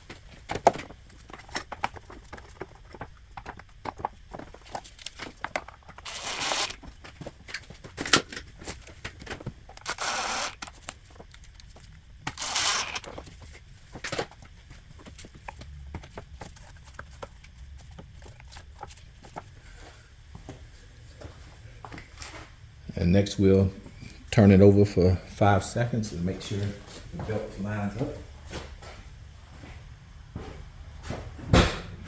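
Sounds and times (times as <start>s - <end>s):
ratchet rasping: 6.0s - 6.8s, 9.8s - 10.7s, 12.3s - 13.2s.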